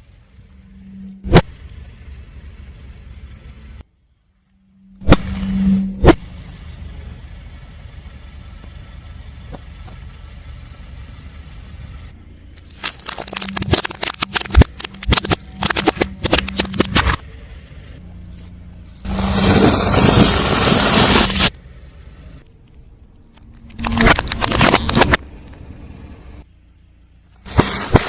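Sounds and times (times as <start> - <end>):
car engine running: 0.0 - 27.9
tyre crushing crunchy objects: 12.6 - 17.2, 23.7 - 25.2.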